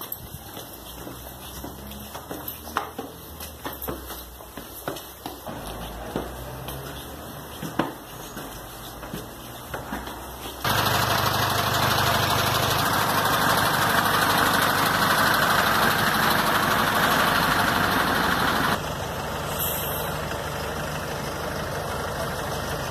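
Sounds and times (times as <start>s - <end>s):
vehicle engine running: 10.6s - 22.9s.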